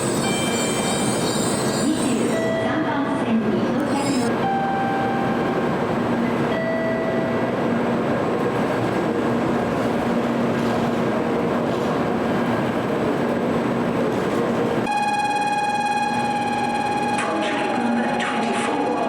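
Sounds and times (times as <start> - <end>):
train rushing noise: 0.0 - 2.5
steady high tone: 0.0 - 2.9, 3.8 - 5.8.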